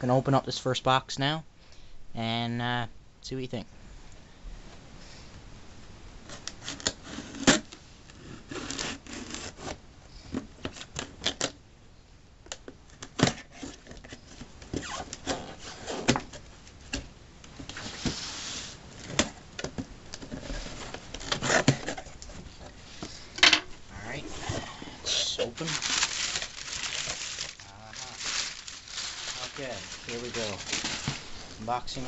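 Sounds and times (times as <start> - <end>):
rustling packing: 12.9 - 17.0, 17.6 - 23.4, 24.1 - 32.0
cardboard box being opened: 20.2 - 22.8, 24.2 - 31.6.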